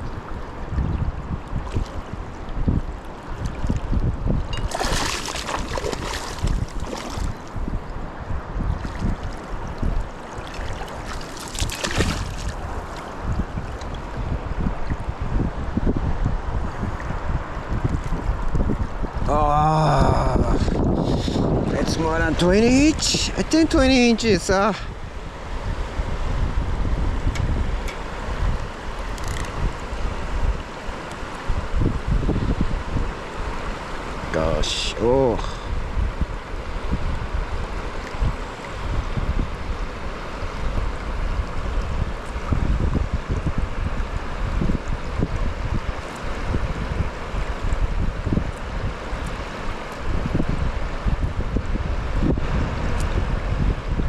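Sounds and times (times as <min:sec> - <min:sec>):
rushing river: 0:00.0 - 0:54.0
wind buffeting microphone: 0:00.0 - 0:54.0
water splashing: 0:04.5 - 0:07.6, 0:08.8 - 0:14.1.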